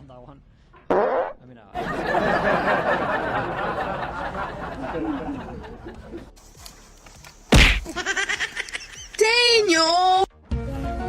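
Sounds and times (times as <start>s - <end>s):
people laughing and chattering: 1.8s - 6.4s, 7.8s - 9.9s.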